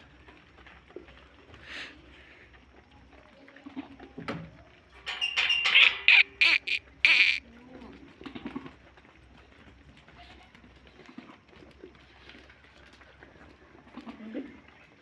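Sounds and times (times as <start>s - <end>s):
goats bleating faintly: 5.8s - 7.4s.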